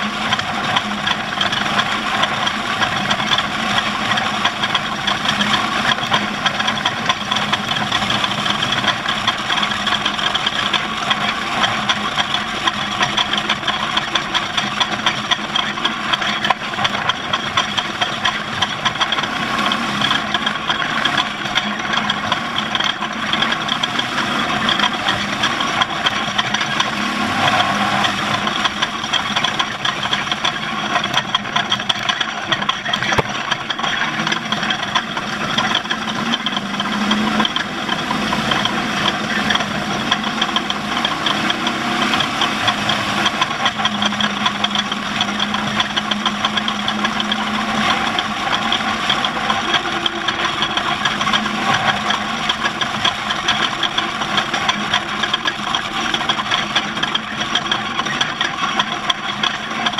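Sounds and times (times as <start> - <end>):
race vehicle engine running: 0.0 - 59.9
small irregular knocks: 28.4 - 59.9.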